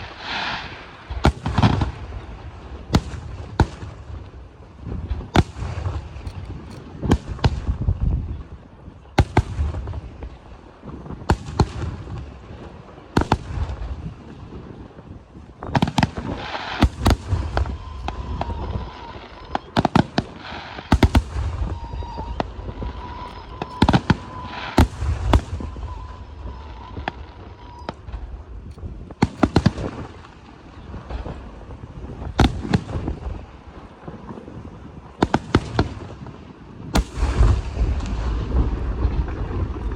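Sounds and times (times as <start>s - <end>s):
fireworks bursting with sharp bangs: 0.0s - 39.9s
fireworks crackling: 0.0s - 39.9s.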